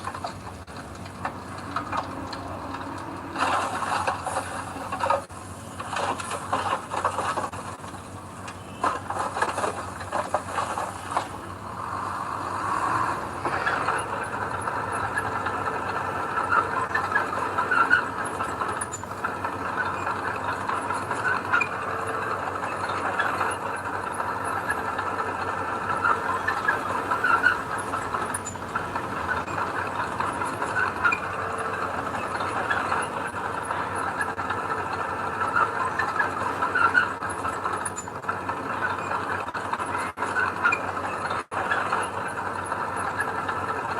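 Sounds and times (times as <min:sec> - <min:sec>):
diesel engine running: 0:00.0 - 0:43.9.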